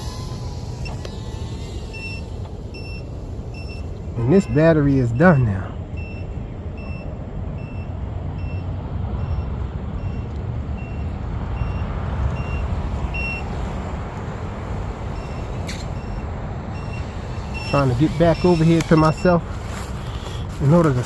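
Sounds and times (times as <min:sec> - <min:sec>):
low rumbling noise: 0:00.0 - 0:21.0
short high warning beeps: 0:01.9 - 0:11.8, 0:15.2 - 0:19.4.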